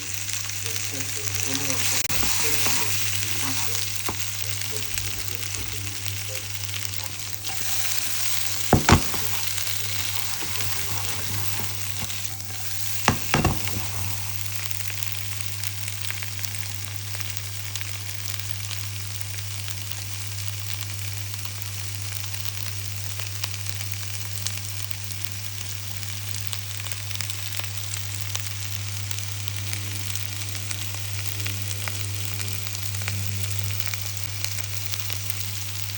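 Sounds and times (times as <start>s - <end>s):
potatoes sizzling in a pan: 0.0s - 35.9s
sharp knocks: 8.6s - 12.2s, 13.1s - 14.3s.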